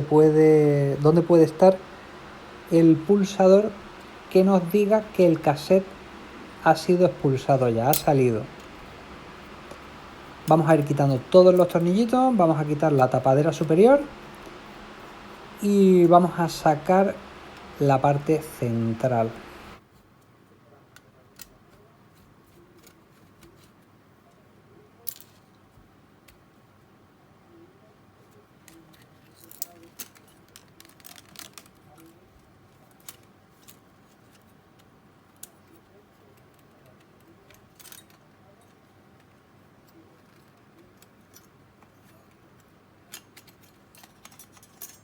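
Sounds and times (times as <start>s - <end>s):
light clicks of small parts: 20.9s - 24.4s, 25.0s - 26.4s, 28.3s - 45.0s.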